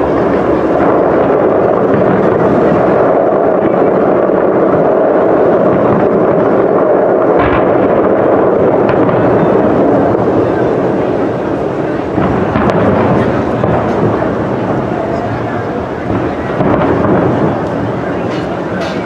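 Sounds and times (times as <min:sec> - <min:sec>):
fireworks booming: 0:00.0 - 0:19.0
sharp firework bang: 0:07.3 - 0:19.0.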